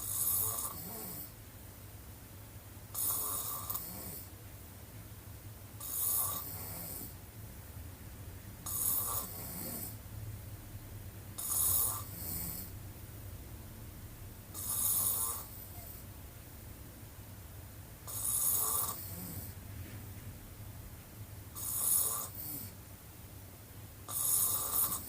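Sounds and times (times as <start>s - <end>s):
woman snoring: 0.0s - 1.3s, 2.9s - 4.3s, 5.8s - 7.2s, 8.6s - 10.0s, 11.4s - 12.7s, 14.5s - 16.0s, 18.1s - 19.6s, 21.5s - 22.8s, 24.1s - 25.0s
steady low hum: 0.0s - 25.0s
quiet breathing: 8.6s - 10.0s, 11.3s - 12.9s, 14.5s - 16.2s.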